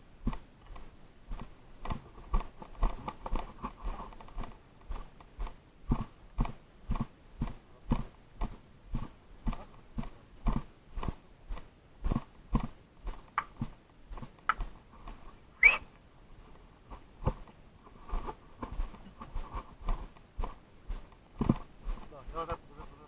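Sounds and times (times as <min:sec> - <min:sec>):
footsteps walking: 0:16.9 - 0:22.6.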